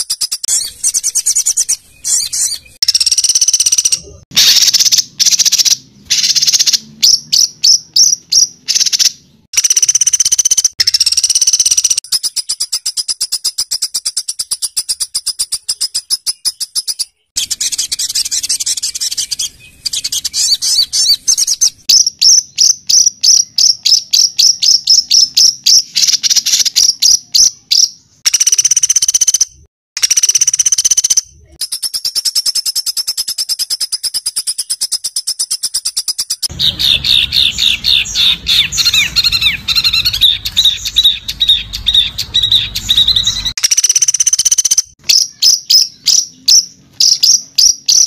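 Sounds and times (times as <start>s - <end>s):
songbird singing rapid trills: 0.0s - 29.4s.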